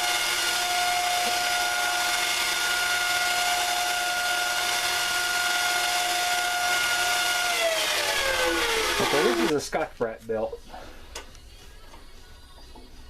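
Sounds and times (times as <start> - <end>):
belt grinder whining: 0.0 - 9.5.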